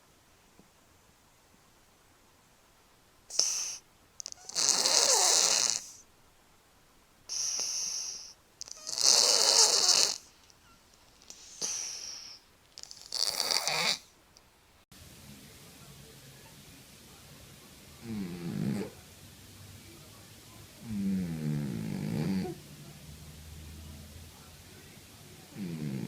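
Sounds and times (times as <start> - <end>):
cat snoring: 3.3 - 6.0, 7.3 - 10.4, 11.2 - 14.1, 18.0 - 19.0, 20.8 - 22.6, 25.5 - 26.0.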